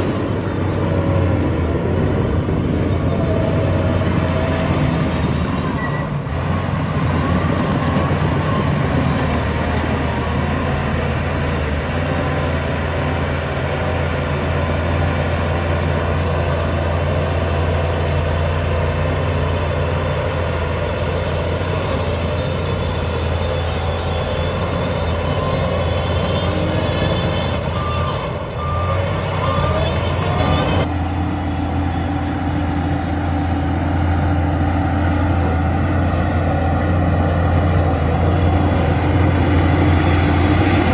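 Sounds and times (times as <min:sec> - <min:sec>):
bulldozer diesel engine running: 0:00.0 - 0:40.9
reverse alarm beeps: 0:23.3 - 0:30.9.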